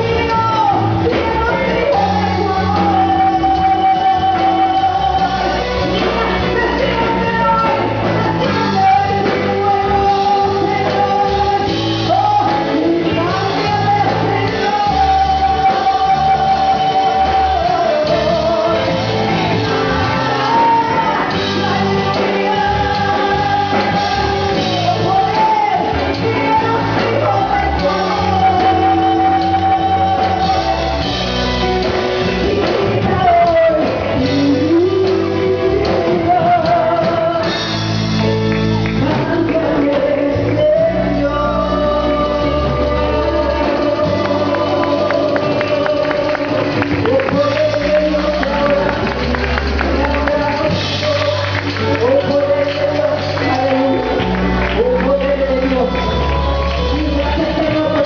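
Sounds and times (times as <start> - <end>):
amplified church band with bass: 0.0 - 58.0
person singing long notes: 0.0 - 58.0.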